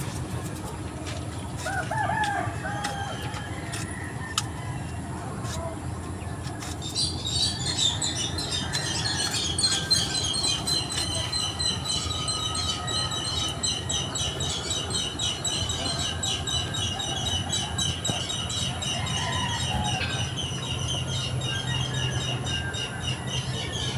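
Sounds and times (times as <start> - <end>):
small birds chirping: 5.6 - 23.9.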